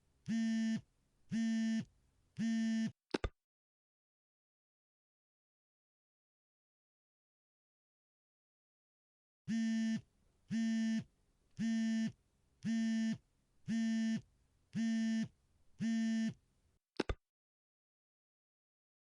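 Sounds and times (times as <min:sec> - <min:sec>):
electronic buzzer beeps: 0:00.3 - 0:03.0, 0:09.5 - 0:14.2, 0:14.8 - 0:16.4
quick clicks: 0:17.0 - 0:17.2.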